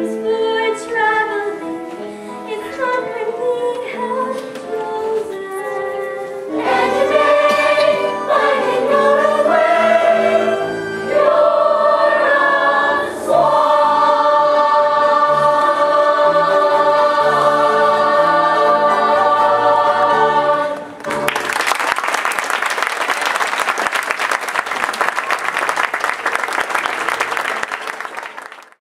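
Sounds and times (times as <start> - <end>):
musical accompaniment: 0.0 - 28.8
children singing in chorus: 6.5 - 21.0
audience applause: 21.0 - 28.8.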